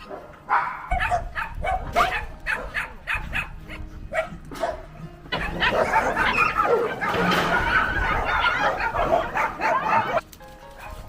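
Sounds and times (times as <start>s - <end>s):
dogs barking: 0.0s - 11.0s.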